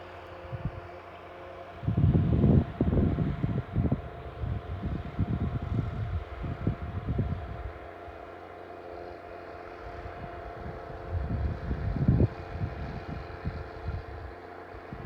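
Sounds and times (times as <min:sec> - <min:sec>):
wind buffeting microphone: 0:01.8 - 0:07.9, 0:09.8 - 0:15.0.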